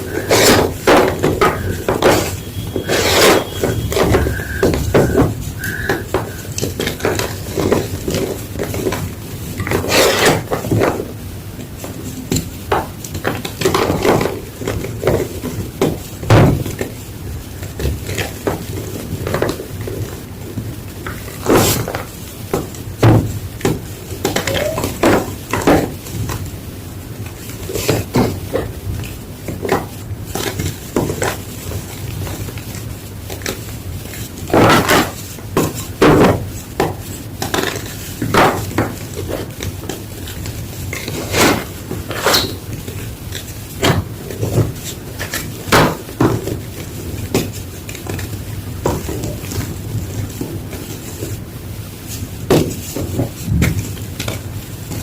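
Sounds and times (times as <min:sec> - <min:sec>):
chalk crunching: 0:00.0 - 0:08.5.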